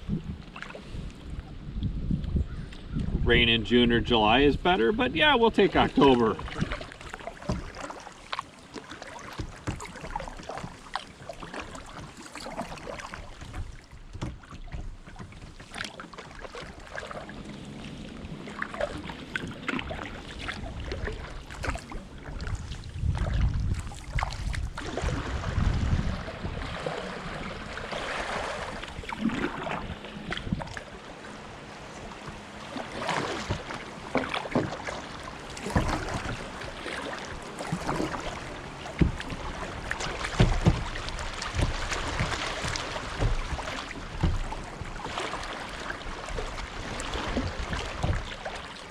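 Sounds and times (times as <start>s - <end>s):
paddle splashing and dripping: 0.0s - 3.2s, 4.2s - 48.9s
knocks against kayak: 7.4s - 7.8s, 9.3s - 10.8s, 13.4s - 15.8s, 35.6s - 36.4s, 38.9s - 45.1s, 47.2s - 48.3s.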